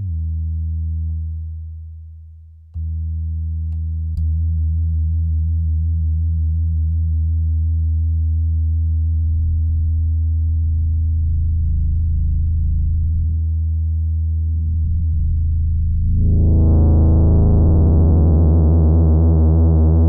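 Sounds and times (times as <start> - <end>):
buzzy synth drone: 14.6 - 20.0.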